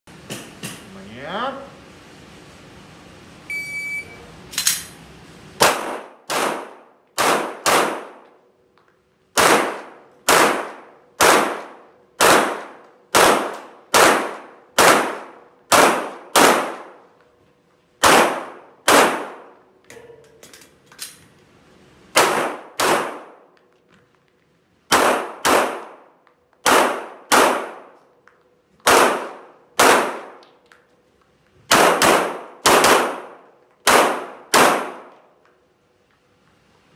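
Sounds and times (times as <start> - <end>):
shot timer beep: 3.5 - 4.2
pistol shots: 5.6 - 8.3, 9.4 - 17.0, 18.0 - 19.6, 22.1 - 23.5, 24.9 - 28.0, 28.8 - 30.4, 31.7 - 35.2.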